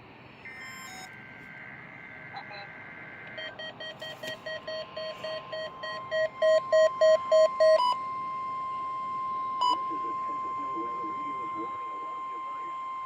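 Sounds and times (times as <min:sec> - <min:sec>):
steady high tone: 0:00.4 - 0:02.2, 0:03.3 - 0:13.0
short beeps: 0:00.5 - 0:01.2, 0:03.3 - 0:10.7.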